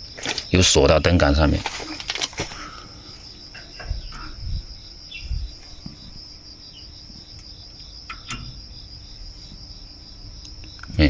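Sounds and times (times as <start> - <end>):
crickets chirping: 0.0 - 11.0
soft handling bumps: 1.4 - 7.5.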